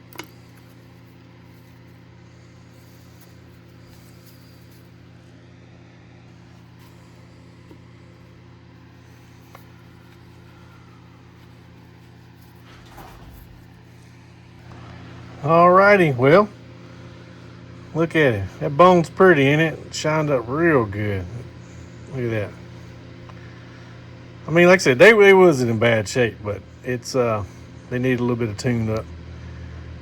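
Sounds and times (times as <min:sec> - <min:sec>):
low electrical hum: 0:00.0 - 0:30.0
brief rustle: 0:11.4 - 0:14.5.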